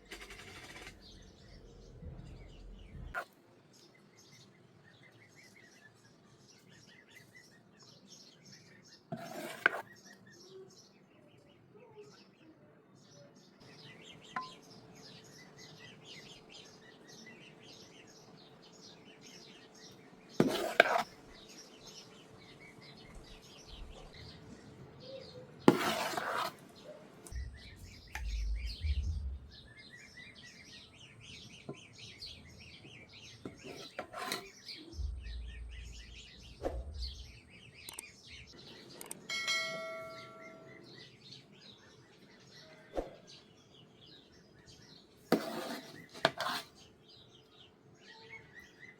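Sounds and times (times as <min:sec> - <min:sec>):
small birds chirping: 0:00.0 - 0:48.9
low rumbles: 0:01.0 - 0:03.1, 0:27.3 - 0:29.8, 0:34.9 - 0:37.6.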